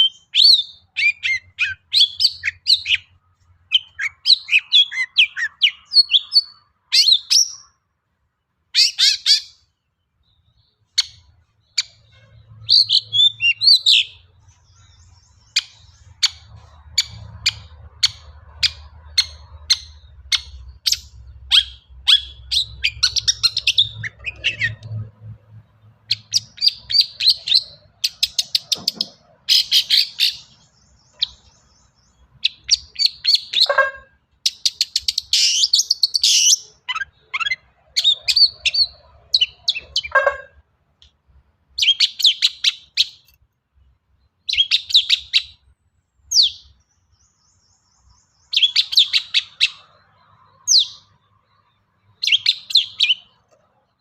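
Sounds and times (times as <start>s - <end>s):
bird singing sharp chattering notes: 10.3s - 24.9s, 46.3s - 49.9s.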